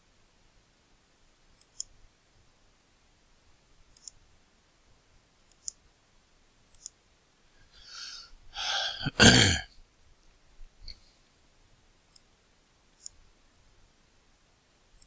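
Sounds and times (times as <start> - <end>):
computer mouse clicks: 1.6 - 1.9, 3.9 - 4.2, 5.5 - 5.8, 6.7 - 7.0
man exhaling: 7.8 - 9.6
man coughing: 8.6 - 9.7.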